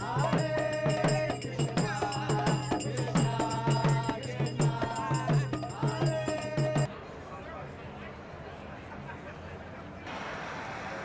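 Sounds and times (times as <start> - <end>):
even percussion beat: 0.0 - 6.9.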